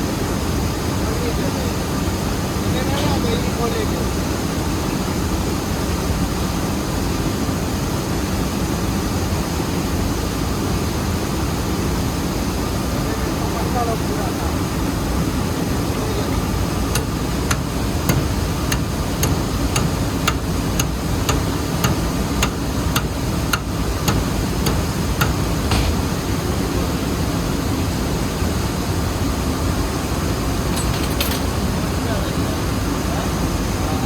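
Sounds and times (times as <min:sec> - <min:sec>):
mill machinery running: 0:15.6 - 0:29.2
sharp metal taps: 0:16.9 - 0:26.2.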